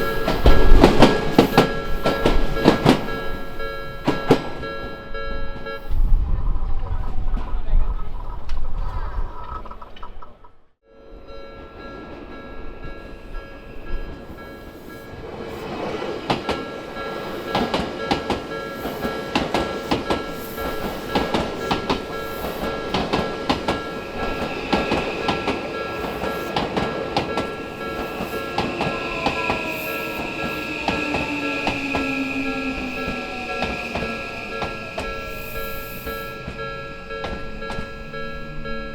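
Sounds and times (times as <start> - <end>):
train wheels clattering: 0.0 - 5.0, 12.0 - 38.7
crossing signal tones: 0.0 - 6.2, 11.1 - 38.9
high squeal: 23.7 - 26.5, 27.5 - 38.3.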